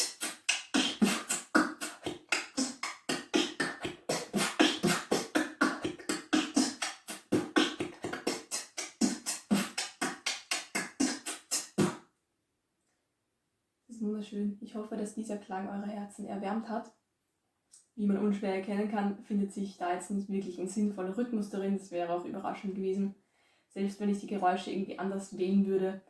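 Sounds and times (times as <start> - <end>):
beatboxing mouth percussion: 0.0 - 12.0.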